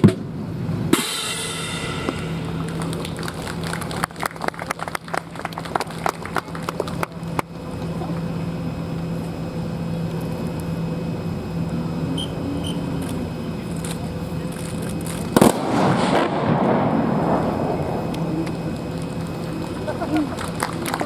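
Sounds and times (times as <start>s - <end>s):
steady low hum: 0.0s - 21.0s
loud sharp crack: 0.9s - 4.0s, 15.1s - 19.8s.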